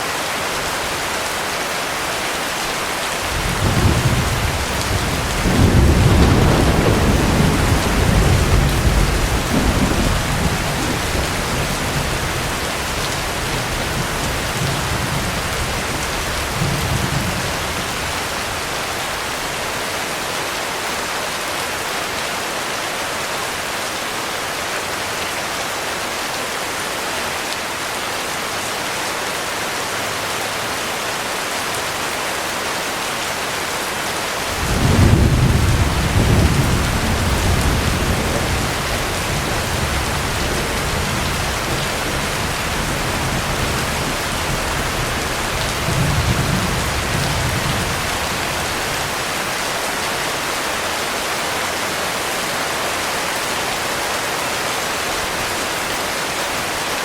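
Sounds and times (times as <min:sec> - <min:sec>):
heavy rain falling: 0:00.0 - 0:57.0
thunder rumbling: 0:03.2 - 0:18.4, 0:34.5 - 0:49.4.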